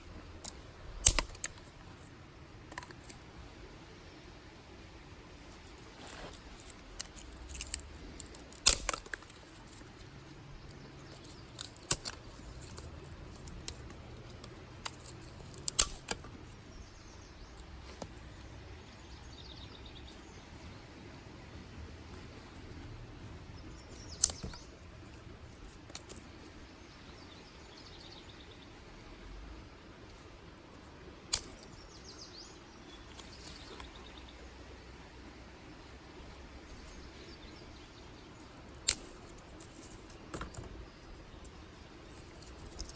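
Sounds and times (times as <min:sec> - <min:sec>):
sticks snapping: 0:00.0 - 0:02.1, 0:02.7 - 0:03.3, 0:05.7 - 0:16.8, 0:23.7 - 0:26.4, 0:31.2 - 0:31.9, 0:32.8 - 0:34.0, 0:38.5 - 0:42.9
faint birds chirping: 0:00.0 - 0:42.9.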